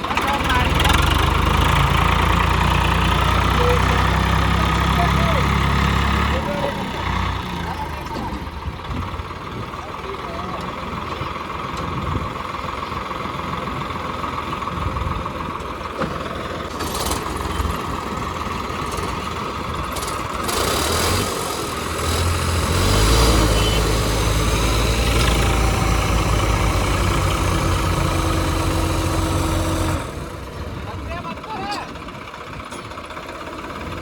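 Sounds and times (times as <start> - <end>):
diesel tractor engine running: 0.0 - 34.0.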